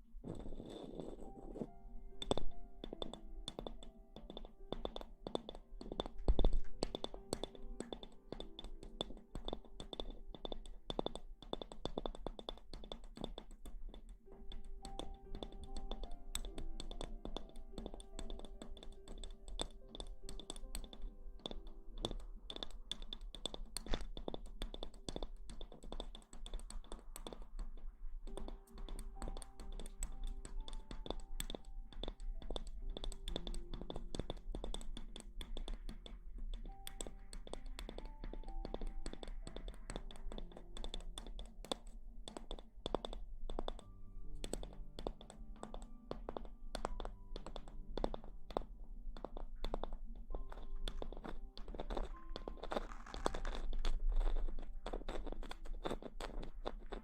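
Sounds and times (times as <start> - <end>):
quiet background music: 0.0 - 57.0.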